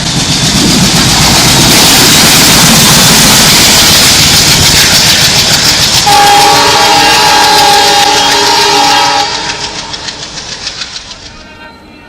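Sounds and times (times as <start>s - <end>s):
train wheels clattering over rails: 0.0s - 11.6s
locomotive horn blast: 6.0s - 9.7s.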